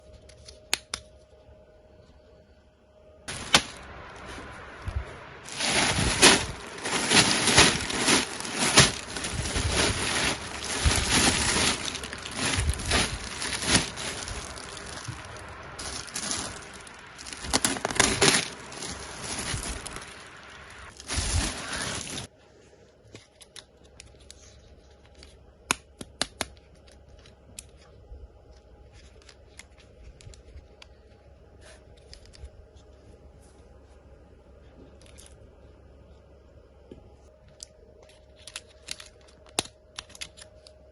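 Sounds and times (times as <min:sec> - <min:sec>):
packaging crinkling and tearing: 0:03.3 - 0:04.1, 0:05.5 - 0:22.3, 0:38.0 - 0:40.8.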